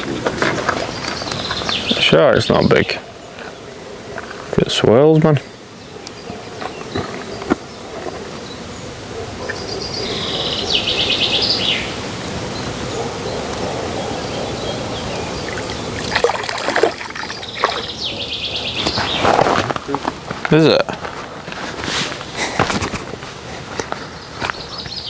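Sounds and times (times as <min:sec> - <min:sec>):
steady background noise: 0:00.0 - 0:25.0
songbird trilling: 0:00.8 - 0:03.8, 0:05.2 - 0:19.6.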